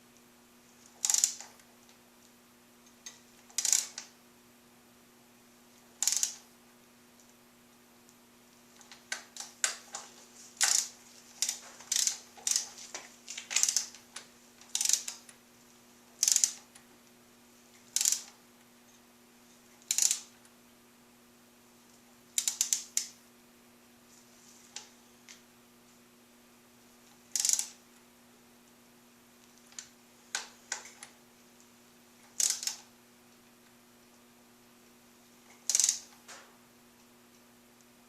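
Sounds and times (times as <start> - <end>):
ratchet wrench clicking: 1.0 - 1.6, 3.5 - 4.0, 6.0 - 6.4, 10.6 - 12.7, 13.5 - 14.0, 14.7 - 15.3, 16.2 - 16.7, 17.9 - 18.3, 19.8 - 20.3, 22.4 - 23.1, 27.3 - 27.8, 32.3 - 32.8, 35.6 - 36.1.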